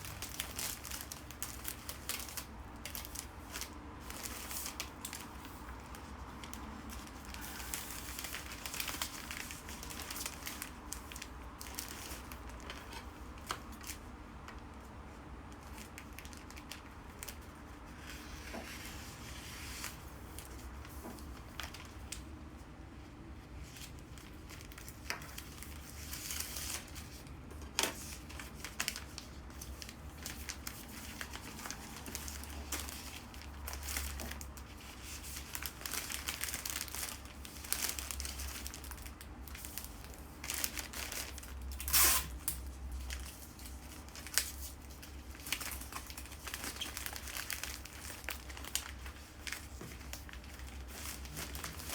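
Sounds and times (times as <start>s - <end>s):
wrapping material crinkling: 0.0s - 51.9s
tearing or cutting paper: 40.5s - 42.6s.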